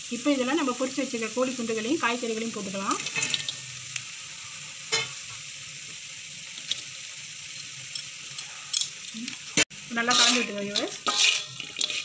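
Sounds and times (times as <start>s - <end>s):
oil sizzling in a pan: 0.0s - 12.0s.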